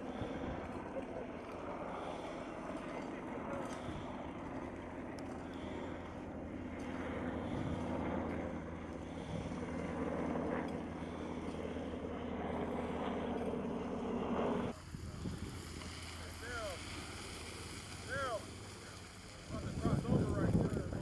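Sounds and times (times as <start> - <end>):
continuous noisy hiss: 14.7 - 21.0.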